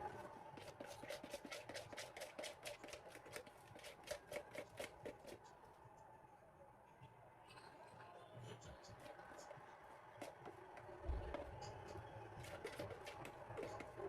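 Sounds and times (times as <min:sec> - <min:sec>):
spoon stirring batter in bowl: 0:00.5 - 0:05.5, 0:12.4 - 0:14.0.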